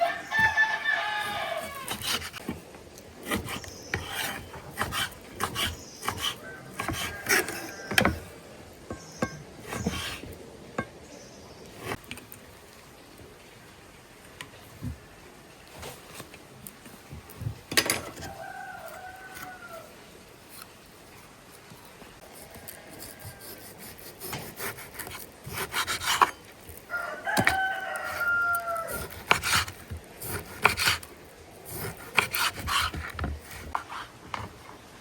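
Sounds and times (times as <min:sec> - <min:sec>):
rooster crowing: 0:00.0 - 0:02.0, 0:06.2 - 0:08.4, 0:18.1 - 0:19.9, 0:26.9 - 0:29.1.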